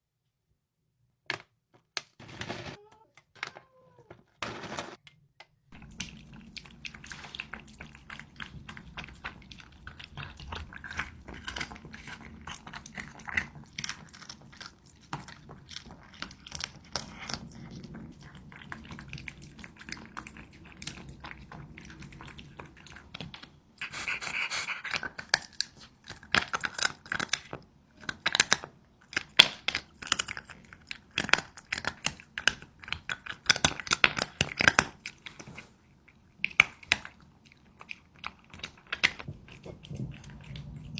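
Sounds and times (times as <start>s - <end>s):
cat crunching food: 5.8s - 40.9s
cat snorting: 23.8s - 25.1s.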